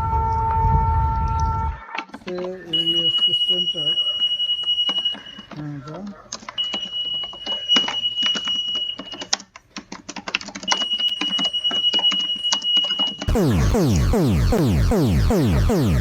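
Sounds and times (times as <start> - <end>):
repeating falling alarm sweep: 13.3 - 16.0
steady high alarm tone: 13.3 - 16.0.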